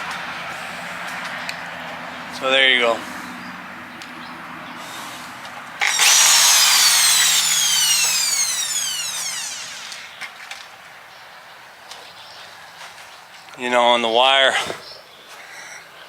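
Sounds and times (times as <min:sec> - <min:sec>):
hammer drill motor whine: 0:05.8 - 0:10.2.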